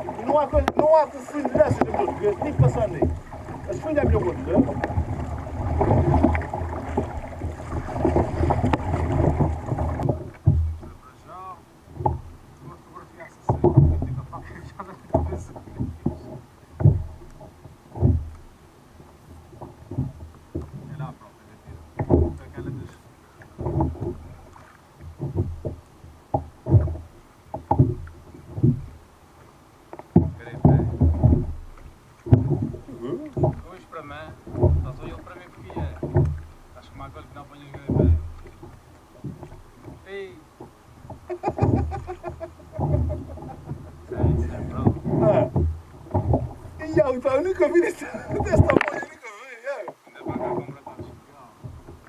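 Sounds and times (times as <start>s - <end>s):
wind buffeting microphone: 0.0s - 10.9s, 40.9s - 49.1s
knocks on kayak: 0.0s - 11.1s, 11.9s - 18.6s, 19.5s - 29.0s, 29.9s - 49.1s
water sloshing around kayak: 0.0s - 52.0s.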